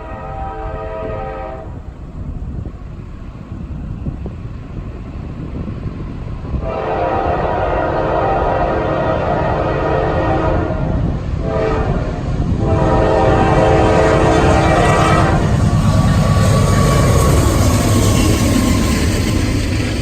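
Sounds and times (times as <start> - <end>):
locomotive air horn blasts: 0.0 - 1.8, 6.6 - 15.6
train rumbling and rail clatter: 0.0 - 20.0.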